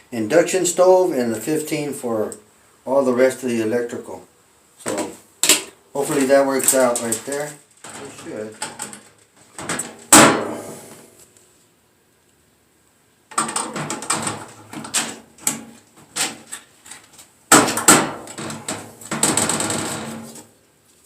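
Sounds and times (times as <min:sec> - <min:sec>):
knocks on metal box: 0:09.6 - 0:10.7, 0:13.3 - 0:15.8, 0:17.5 - 0:20.4.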